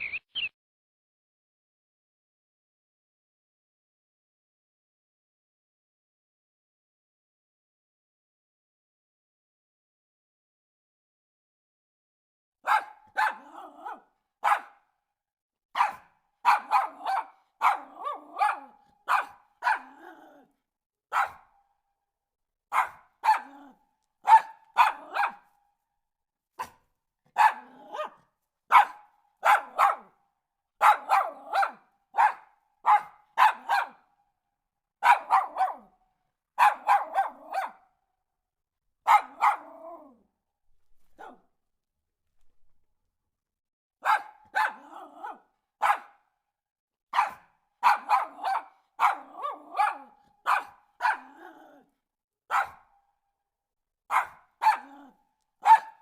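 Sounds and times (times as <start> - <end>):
dog barking: 12.6 - 15.0, 15.7 - 20.5, 21.1 - 21.7, 22.7 - 25.6, 26.6 - 30.2, 30.8 - 34.2, 35.0 - 36.0, 36.6 - 38.0, 39.0 - 40.2, 41.0 - 41.5, 44.0 - 46.4, 47.1 - 51.9, 52.5 - 53.0, 54.1 - 56.0.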